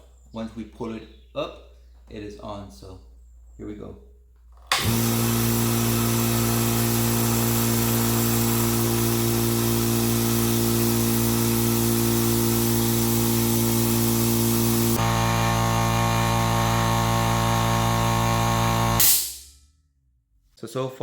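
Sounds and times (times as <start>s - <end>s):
air compressor humming: 4.7s - 19.5s.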